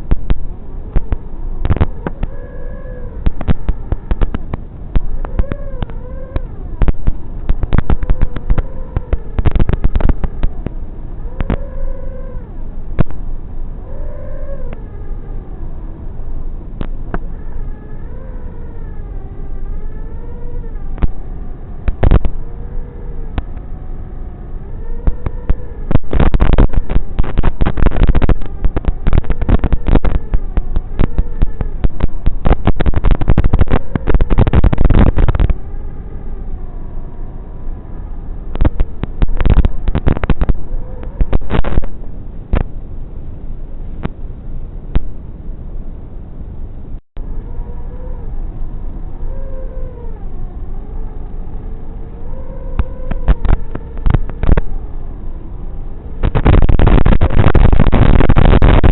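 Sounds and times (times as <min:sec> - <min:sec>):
loud dense crackling: 0:00.0 - 0:02.4, 0:03.2 - 0:10.8, 0:25.0 - 0:35.6, 0:38.5 - 0:42.7, 0:52.8 - 0:54.8, 0:56.2 - 0:58.9
drone motors whining: 0:00.0 - 0:42.8, 0:47.2 - 0:58.9.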